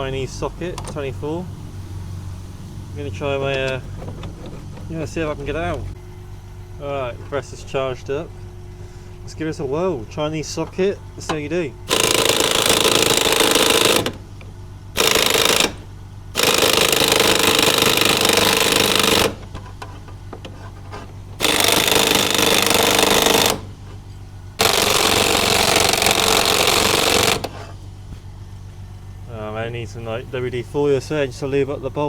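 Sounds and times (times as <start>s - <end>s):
pneumatic impact wrench hammering: 11.2s - 24.0s, 24.6s - 27.8s.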